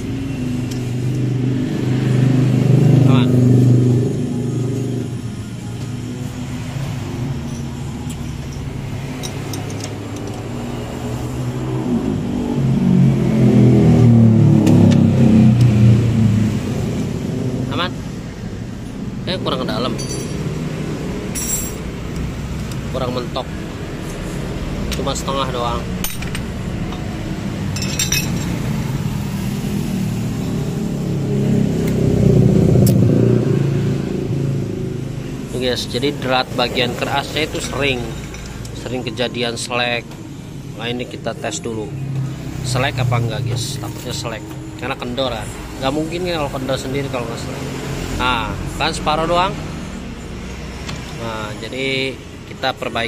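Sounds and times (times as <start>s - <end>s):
motorcycle engine revving: 0.0s - 51.2s
sharp metallic clink: 20.0s - 20.5s, 21.3s - 21.9s, 27.7s - 28.6s.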